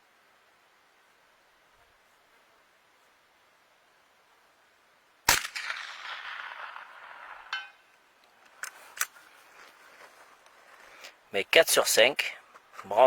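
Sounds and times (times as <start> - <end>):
rifle shot with echo: 5.3 - 7.8.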